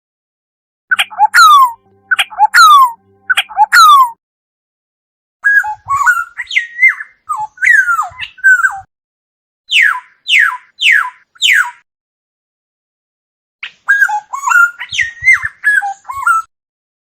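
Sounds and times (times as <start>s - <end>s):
oriole singing fluty whistles: 0.9s - 4.2s, 13.9s - 16.5s.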